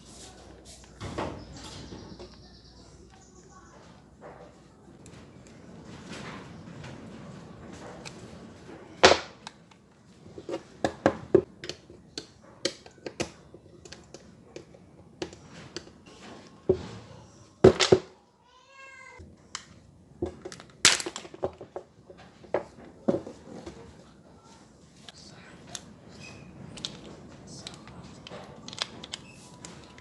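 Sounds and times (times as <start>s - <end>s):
hard objects clicking and knocking: 3.9s - 18.2s, 19.2s - 24.0s, 26.5s - 30.0s.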